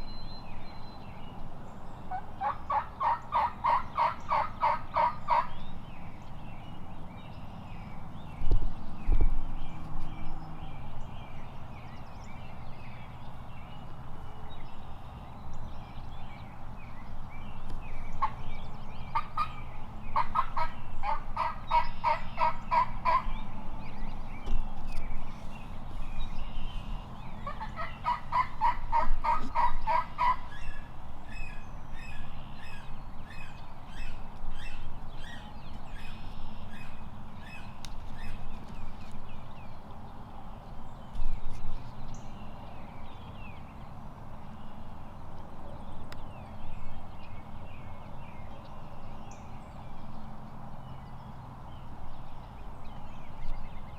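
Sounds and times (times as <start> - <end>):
turkey gobbling: 2.1 - 5.5, 19.1 - 23.3, 27.4 - 30.8.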